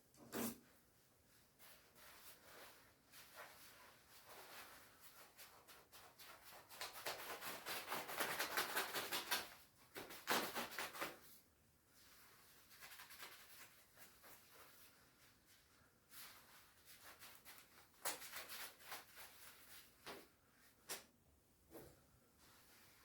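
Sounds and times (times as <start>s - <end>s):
jacket fabric rustling: 1.3s - 6.8s.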